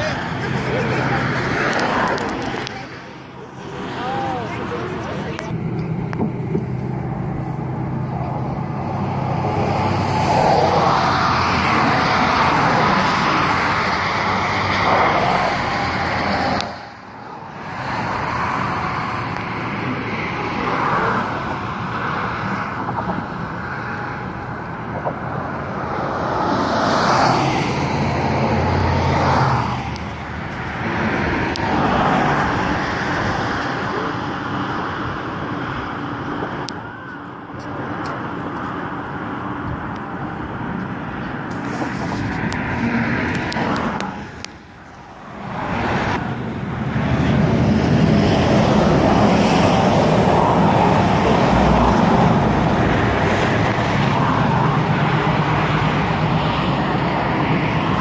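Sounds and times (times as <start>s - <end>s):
cars passing on road: 0.0s - 58.0s.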